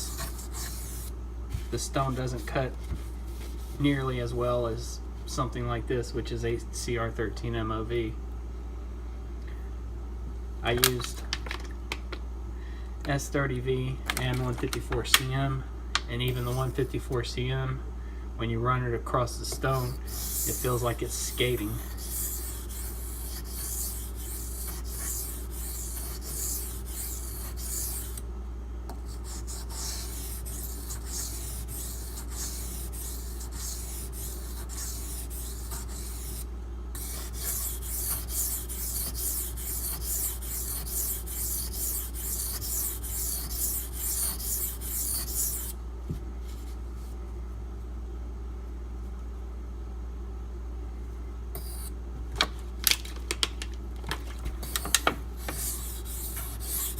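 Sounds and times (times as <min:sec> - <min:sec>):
low steady hum: 0:00.0 - 0:56.9
knife scraping on whetstone: 0:19.6 - 0:28.2, 0:37.0 - 0:45.7, 0:54.6 - 0:56.9.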